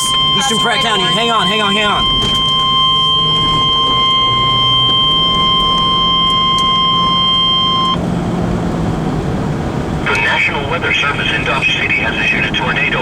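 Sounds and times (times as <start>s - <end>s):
steady alarm beep: 0.0s - 8.0s
vehicle hum: 0.0s - 13.0s.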